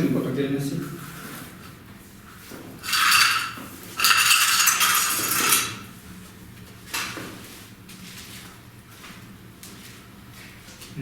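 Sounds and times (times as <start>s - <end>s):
metal hand tools clattering: 2.8s - 5.8s.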